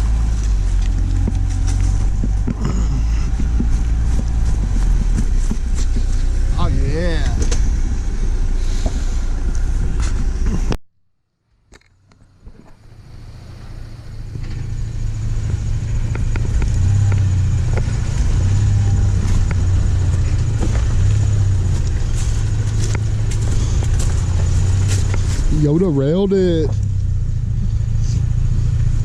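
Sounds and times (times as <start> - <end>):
engine and drivetrain rumble: 0.0 - 10.8, 11.4 - 29.0.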